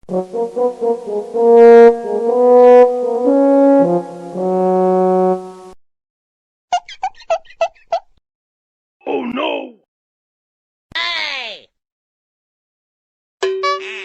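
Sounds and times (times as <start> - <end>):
brass comic tune: 0.0 - 5.8.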